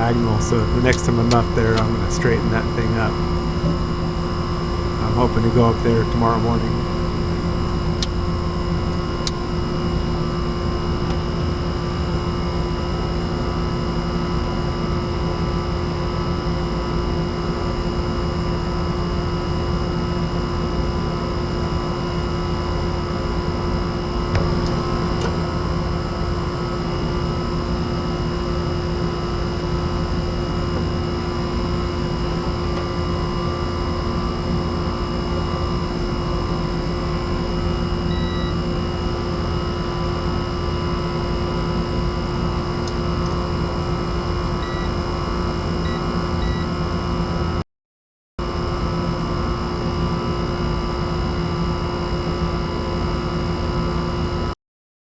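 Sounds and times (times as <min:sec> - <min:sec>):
air conditioner humming: 0:00.0 - 0:11.1
faint click: 0:03.1 - 0:11.2.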